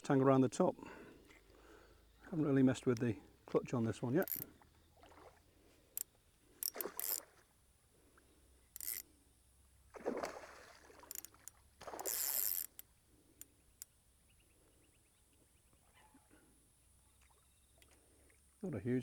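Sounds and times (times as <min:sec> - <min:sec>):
fishing tackle clicks and knocks: 0:02.8 - 0:04.5, 0:05.9 - 0:07.2, 0:08.7 - 0:09.1, 0:11.0 - 0:14.0
fish splashing in water: 0:04.9 - 0:05.5, 0:09.9 - 0:12.4.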